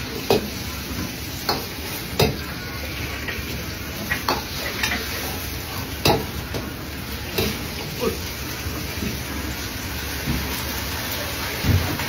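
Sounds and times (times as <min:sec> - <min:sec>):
frying sizzle in a pan: 0:00.0 - 0:12.0.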